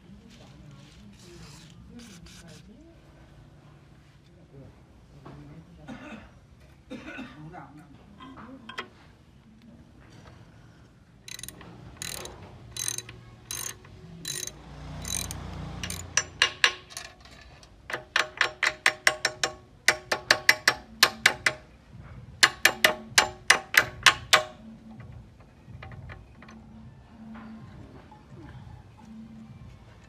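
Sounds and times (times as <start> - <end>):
ringing metallic knocks: 11.3 - 21.7, 22.4 - 26.7.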